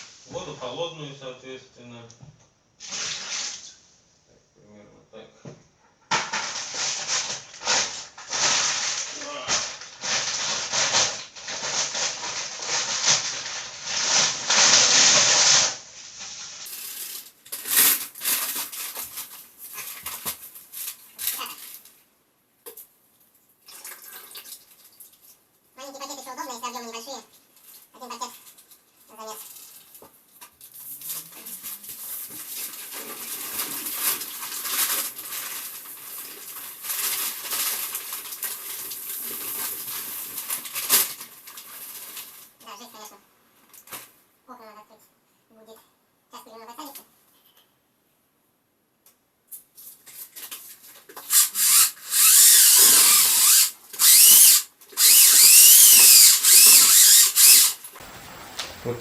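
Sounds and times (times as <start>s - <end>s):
concrete mix pouring into tub: 2.8s - 3.7s, 6.2s - 18.4s, 30.9s - 42.6s
sand pouring from bag: 2.8s - 3.7s, 6.4s - 17.2s
packaging crinkling and clicking: 16.6s - 22.0s, 29.4s - 42.5s.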